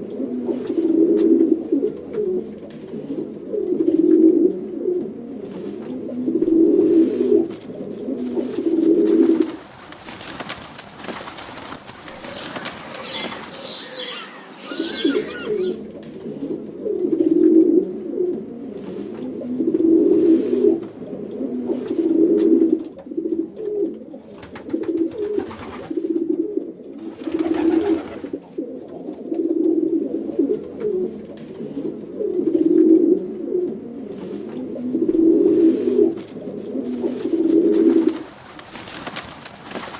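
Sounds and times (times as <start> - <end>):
pigeons cooing: 0.0 - 39.9
rustling: 6.9 - 14.1, 35.4 - 39.9
faint higher bird calls: 12.0 - 15.8.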